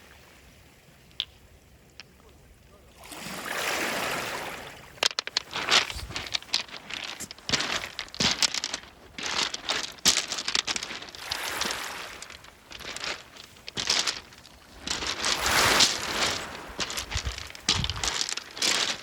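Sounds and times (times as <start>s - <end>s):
pebbles crunching and clattering: 5.0s - 19.0s.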